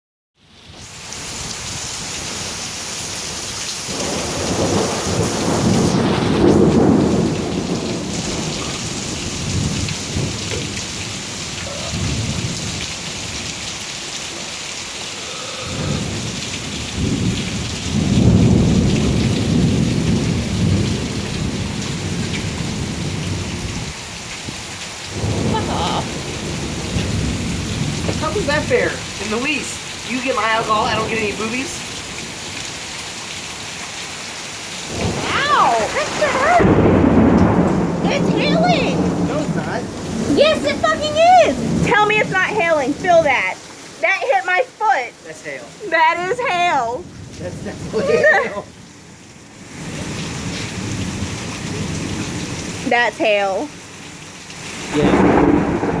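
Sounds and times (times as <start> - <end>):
steady rain: 0.4 - 56.0
thunder rumbling: 3.2 - 13.5, 15.7 - 32.5, 34.9 - 43.6, 54.9 - 56.0.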